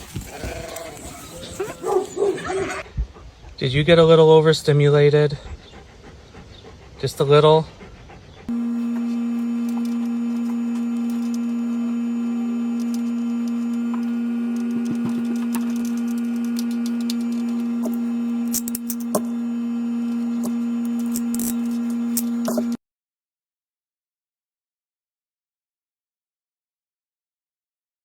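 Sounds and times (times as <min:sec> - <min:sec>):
loud steady hum: 0:08.5 - 0:22.8.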